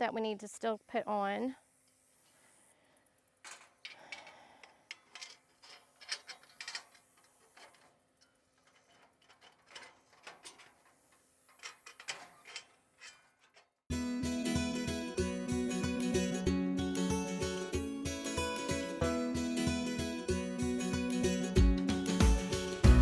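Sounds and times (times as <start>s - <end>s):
parts clicking and clattering: 3.4s - 13.7s.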